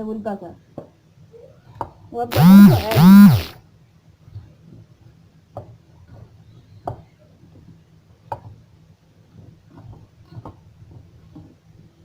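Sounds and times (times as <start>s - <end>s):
low steady hum: 2.3s - 3.6s.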